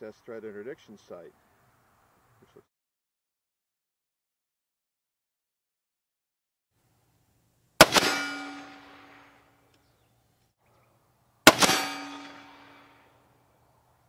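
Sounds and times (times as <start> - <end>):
suppressed rifle shots: 7.8 - 9.5, 11.4 - 13.0
bullet clanging on steel target: 7.9 - 9.2, 11.5 - 12.9.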